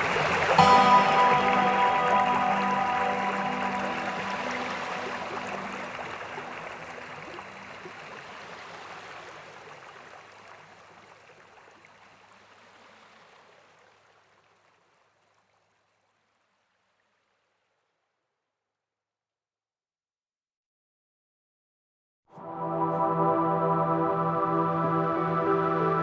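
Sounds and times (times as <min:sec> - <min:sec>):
flowing stream water: 0:00.0 - 0:17.7
soft sustained music tones: 0:00.1 - 0:08.4, 0:22.4 - 0:26.0.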